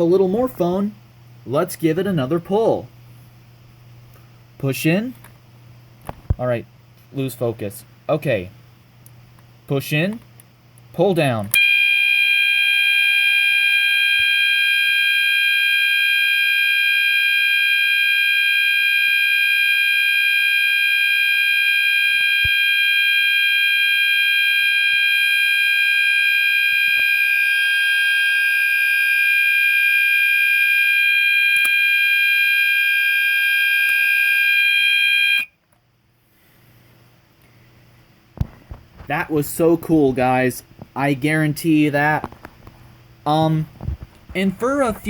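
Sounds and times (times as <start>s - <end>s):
fire alarm high-pitched tone: 11.6s - 35.6s.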